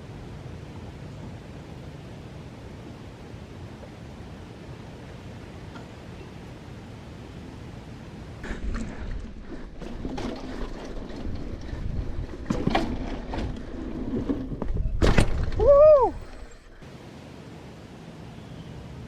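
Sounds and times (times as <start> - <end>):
bike knocking and rattling on bumps: 8.4 - 16.0
bike tyres and drivetrain rumble: 8.4 - 16.8
person whooping: 15.6 - 16.4.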